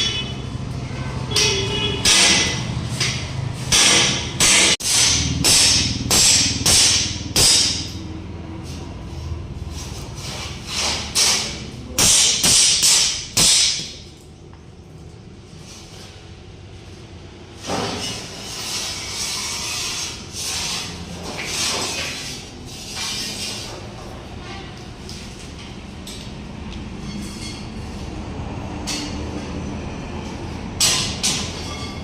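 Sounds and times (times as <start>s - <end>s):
hammer striking steel: 1.3s - 8.1s, 10.9s - 14.0s, 30.8s - 32.0s
rough scraping noise: 17.6s - 25.4s.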